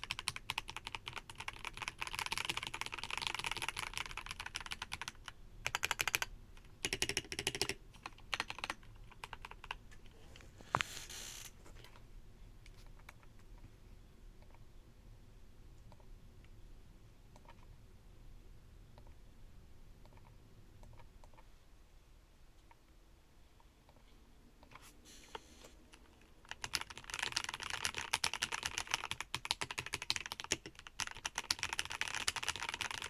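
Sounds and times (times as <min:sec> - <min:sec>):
mechanical keyboard typing: 0:00.0 - 0:10.0, 0:26.0 - 0:33.0.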